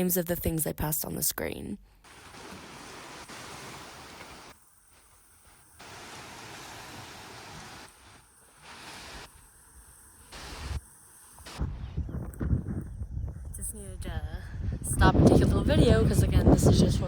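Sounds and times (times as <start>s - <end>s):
wind: 2.0s - 17.0s
surf: 2.1s - 9.4s.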